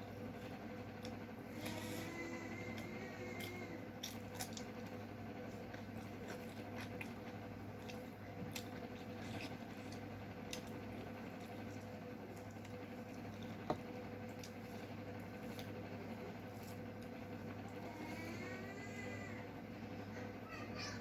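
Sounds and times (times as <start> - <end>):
wet squishing of eating by hand: 0.0 - 20.0
steady low hum: 0.0 - 21.0
high-pitched voice in background: 17.8 - 21.0.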